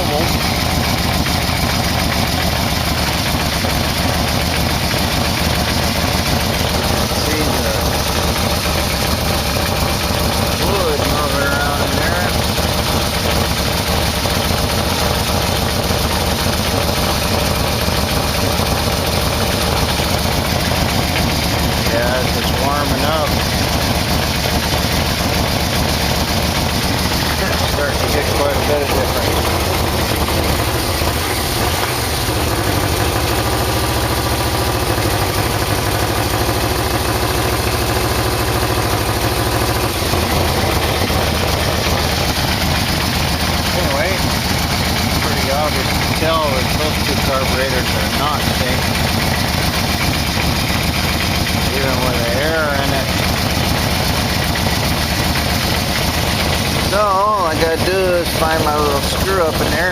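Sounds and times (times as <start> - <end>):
motorcycle engine idling: 0.0 - 59.9.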